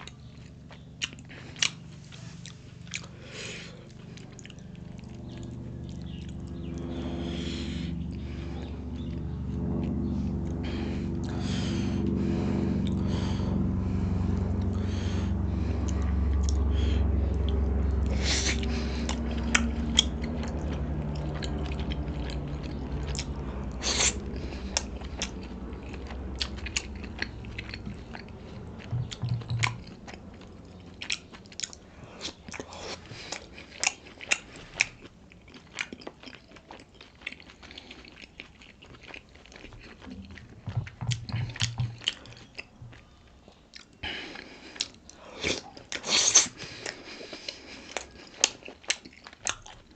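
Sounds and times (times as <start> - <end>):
person chewing food: 0.0 - 49.9
steady low hum: 0.0 - 49.9.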